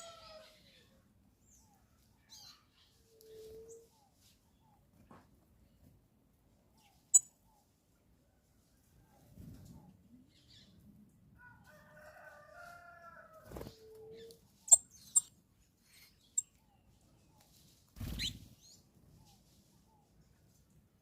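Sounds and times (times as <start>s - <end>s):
rooster crowing: 11.4s - 13.4s.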